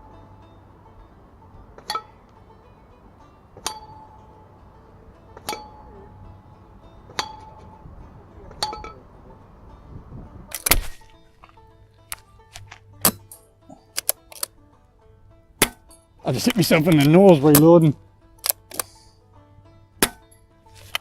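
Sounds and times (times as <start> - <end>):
pellet pinging metal target: 5.4 - 5.9, 7.1 - 7.6, 8.5 - 9.0, 13.0 - 13.5, 15.6 - 16.6, 20.0 - 20.4
air rifle shots: 10.5 - 11.1.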